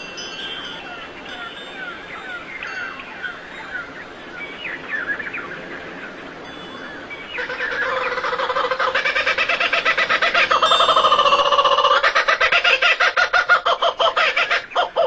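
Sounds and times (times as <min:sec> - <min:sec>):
rapid pulsing bird call: 0:07.0 - 0:15.0.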